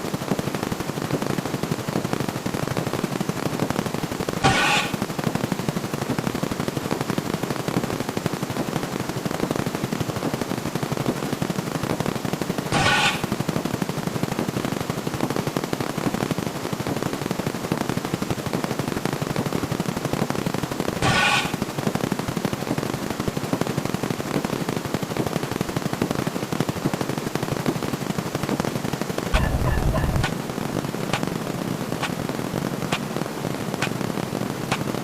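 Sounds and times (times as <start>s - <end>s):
short pitched tone: 29.4s - 30.3s
rapid stream of clicks: 33.8s - 34.0s, 34.7s - 35.0s.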